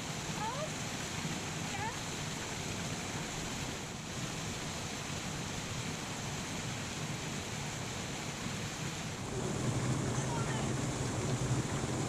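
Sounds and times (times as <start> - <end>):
steady rushing noise: 9.0 - 12.0.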